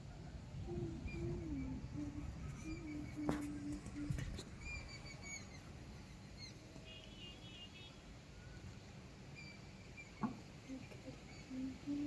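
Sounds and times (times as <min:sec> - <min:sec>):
low wind rumble: 0:00.0 - 0:06.4
faint bird chirps: 0:00.1 - 0:07.6, 0:08.4 - 0:12.0.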